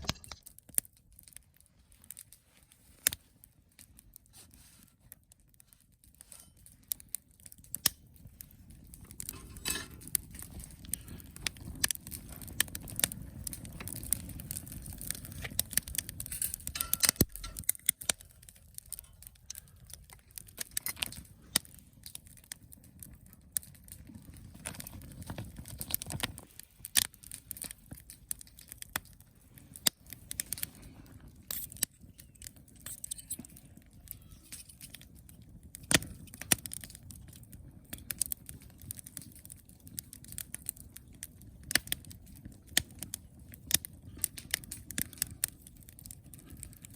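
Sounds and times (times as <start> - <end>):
crackling: 0.0 - 46.9
metal utensils clicking and clinking: 9.3 - 10.1, 16.3 - 17.7.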